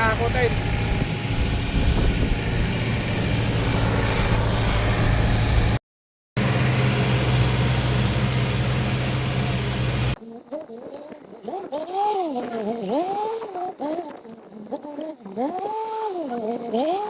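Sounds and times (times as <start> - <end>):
tractor engine running: 0.0 - 5.8, 6.4 - 10.2.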